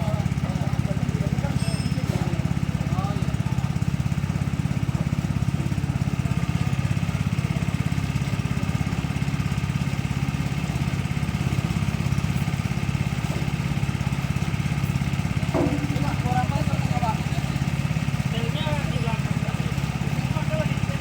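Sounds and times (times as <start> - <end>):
small engine running: 0.0 - 21.0.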